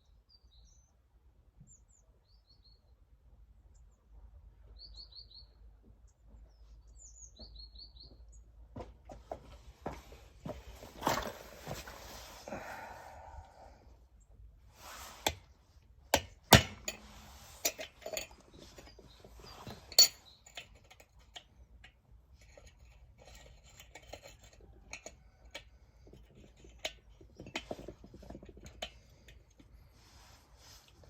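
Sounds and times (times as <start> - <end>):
metal tools knocking and clinking: 16.2 - 29.6.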